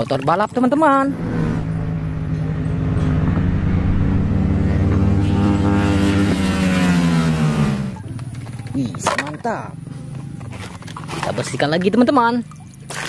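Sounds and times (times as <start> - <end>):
motorcycle engine running: 0.8 - 8.9.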